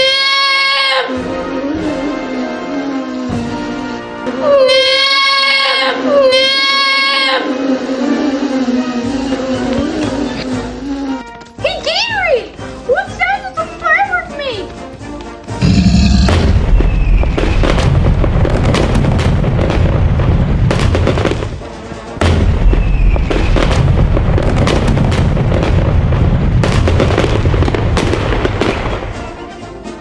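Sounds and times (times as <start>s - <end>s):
falling firework whistle: 15.6s - 18.0s, 22.7s - 23.7s
fireworks bangs and crackles: 15.6s - 29.5s.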